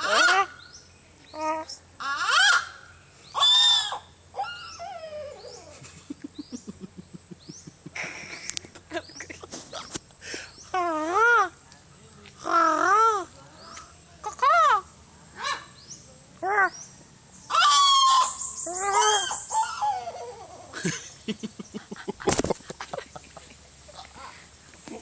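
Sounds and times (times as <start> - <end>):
bird laugh-like calls: 2.2 - 10.4, 17.5 - 25.0.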